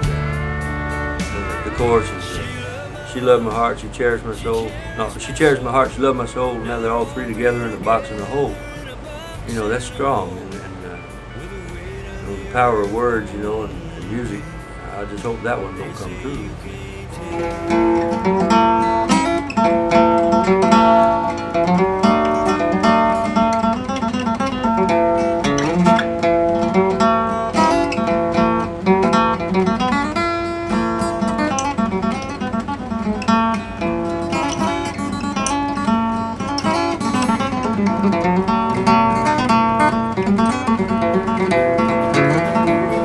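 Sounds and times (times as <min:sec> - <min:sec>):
instrumental country acoustic guitar: 0:00.0 - 0:43.0.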